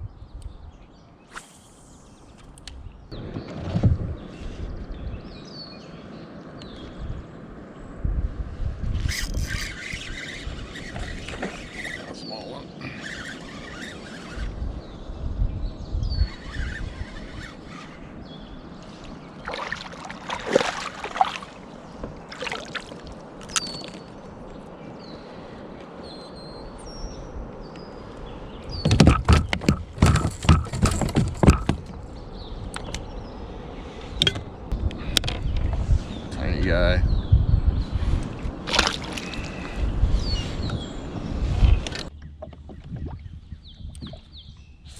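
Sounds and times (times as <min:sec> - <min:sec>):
paddle moving water: 0:09.2 - 0:15.0, 0:16.3 - 0:36.3, 0:37.9 - 0:44.3
paddle knocking against hull: 0:28.8 - 0:32.0.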